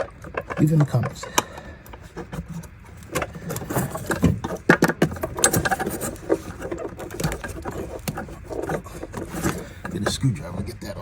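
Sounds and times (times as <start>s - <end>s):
tools clicking and scraping parts: 0.0s - 10.3s.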